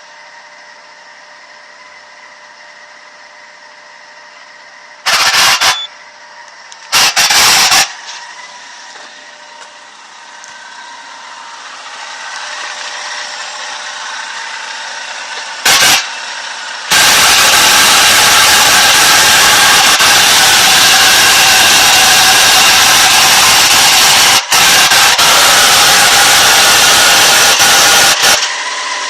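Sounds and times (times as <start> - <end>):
thin steady whine: 0.0 - 25.2
car engine running: 0.0 - 29.0
loud bursts of noise: 5.0 - 5.9, 6.9 - 8.2, 10.0 - 29.0.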